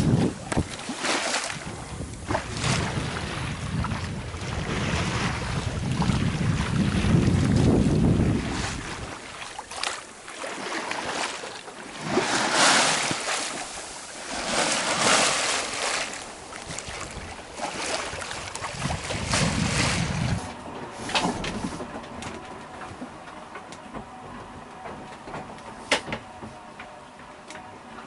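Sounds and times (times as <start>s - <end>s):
wind on microphone: 0.0s - 9.8s, 12.0s - 22.9s
water washing along a hull: 0.0s - 28.0s.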